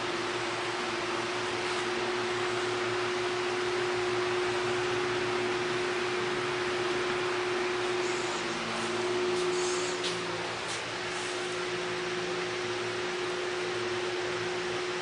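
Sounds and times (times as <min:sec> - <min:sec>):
machine hum: 0:00.0 - 0:15.0.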